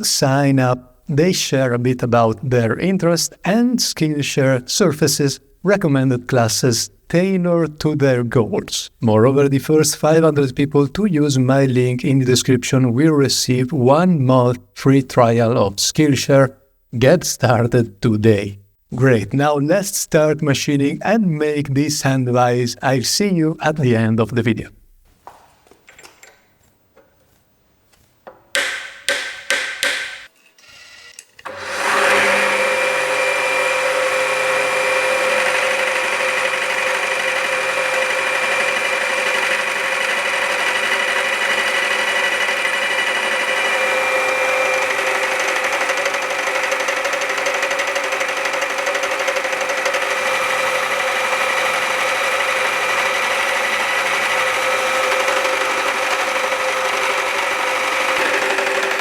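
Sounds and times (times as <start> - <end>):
knocks and clicks: 28.2 - 30.3
machine tool whining: 29.9 - 59.0.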